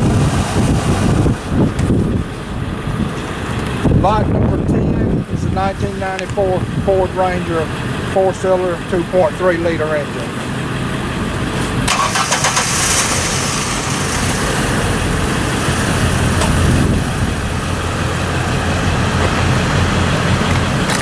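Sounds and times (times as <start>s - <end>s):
engine idling: 0.0s - 21.0s
engine cranking: 11.5s - 21.0s.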